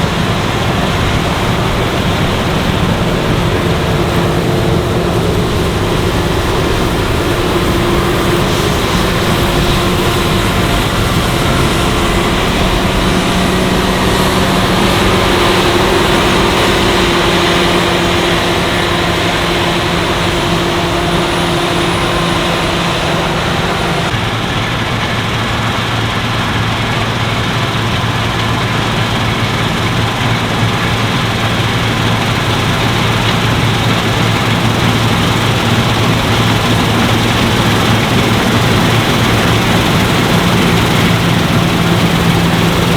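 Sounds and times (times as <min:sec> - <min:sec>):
threshing machinery rushing: 0:00.0 - 0:24.2
diesel engine running under load: 0:00.0 - 0:42.9.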